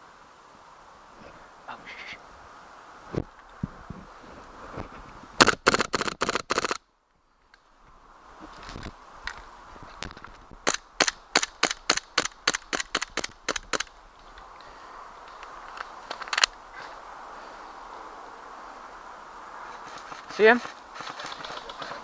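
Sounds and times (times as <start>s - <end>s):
airsoft gun shots: 5.4s - 6.8s.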